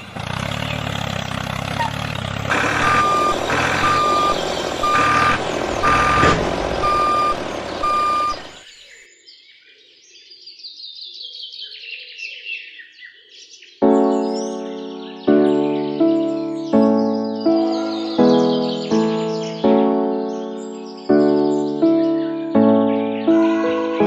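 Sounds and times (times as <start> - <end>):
vehicle engine noise: 0.0 - 8.7
birds chirping: 0.0 - 24.0
reversing alarm beeping: 2.5 - 8.6
music: 13.8 - 24.0.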